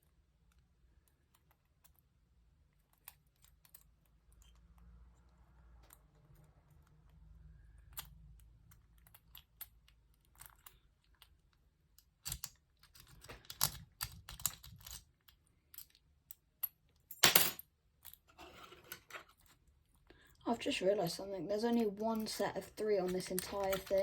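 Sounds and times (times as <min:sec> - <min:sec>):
lock pick clicking and scraping: 0:07.6 - 0:16.8, 0:23.0 - 0:24.0.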